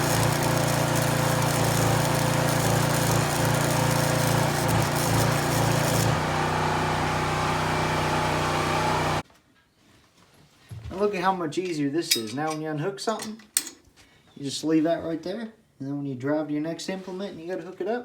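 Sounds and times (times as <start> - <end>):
machine hiss: 0.0 - 6.2
machine humming: 0.0 - 9.2.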